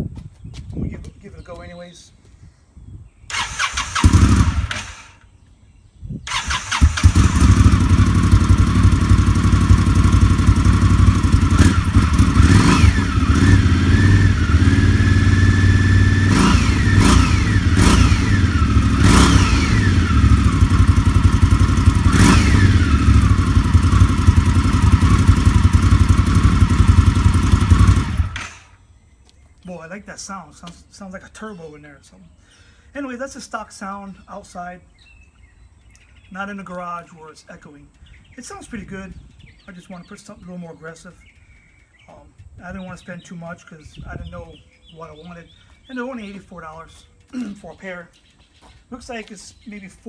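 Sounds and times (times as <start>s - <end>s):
motorcycle engine revving: 3.3s - 5.3s, 6.3s - 28.8s.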